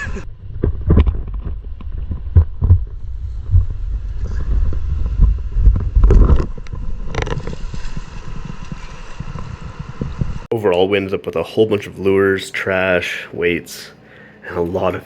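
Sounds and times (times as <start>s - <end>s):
wind buffeting microphone: 0.0s - 10.5s.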